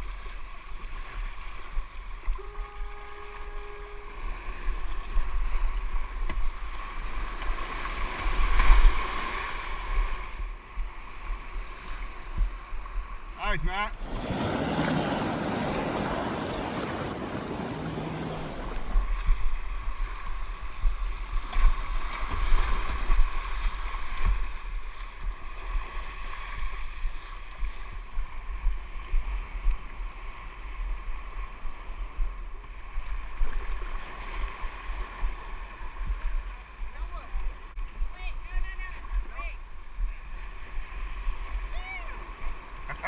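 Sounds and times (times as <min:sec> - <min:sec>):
wind rumble on microphone: 0:00.0 - 0:13.4, 0:14.0 - 0:42.7
water rushing around a kayak: 0:00.0 - 0:43.0
paddle splashing water: 0:14.0 - 0:19.2.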